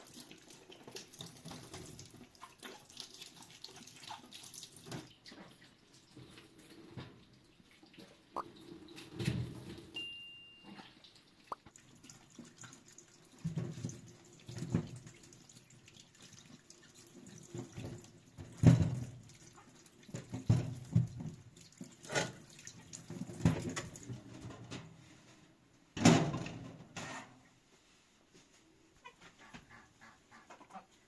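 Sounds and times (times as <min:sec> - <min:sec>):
water splashing and dripping: 0:00.0 - 0:10.0, 0:10.7 - 0:24.6.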